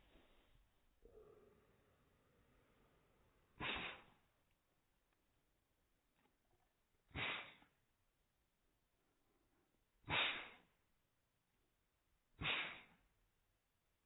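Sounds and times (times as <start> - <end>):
cat sneezing: 3.6 - 4.2, 7.1 - 7.7, 10.0 - 10.8, 12.4 - 13.1.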